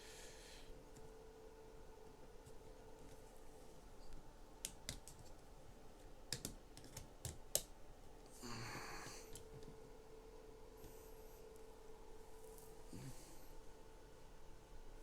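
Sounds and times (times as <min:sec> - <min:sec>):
plastic parts clicking together: 0:06.3 - 0:07.7.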